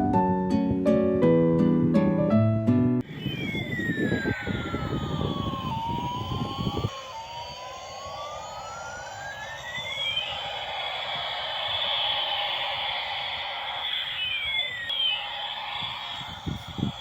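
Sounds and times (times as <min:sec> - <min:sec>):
toy siren sliding tone: 0:03.0 - 0:17.0.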